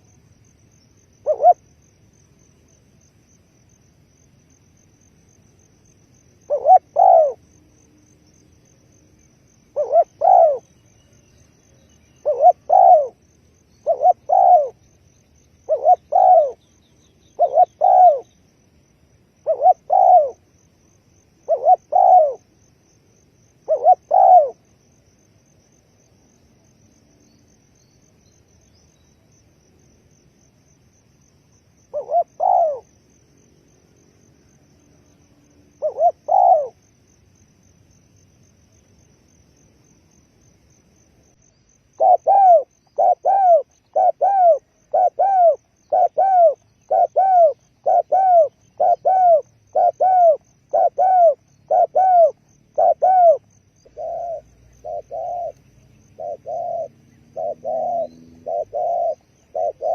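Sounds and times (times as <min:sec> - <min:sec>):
dove cooing: 0:01.2 - 0:01.6, 0:06.4 - 0:07.4, 0:09.7 - 0:10.7, 0:12.2 - 0:13.2, 0:13.8 - 0:14.8, 0:15.6 - 0:16.6, 0:17.3 - 0:18.3, 0:19.4 - 0:20.4, 0:21.4 - 0:22.5, 0:23.6 - 0:24.6, 0:31.9 - 0:32.9, 0:35.8 - 0:36.8, 0:42.0 - 0:59.9.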